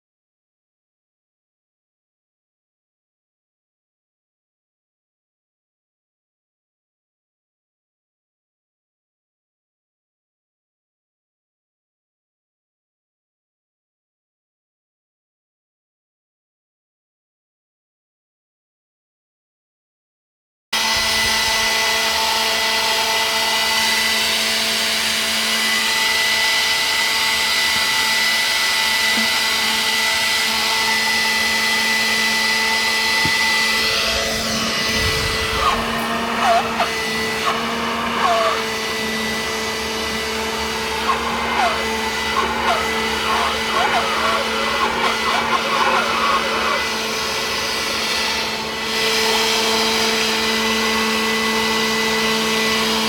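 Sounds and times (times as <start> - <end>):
electric motor whirring: 20.8 - 53.0.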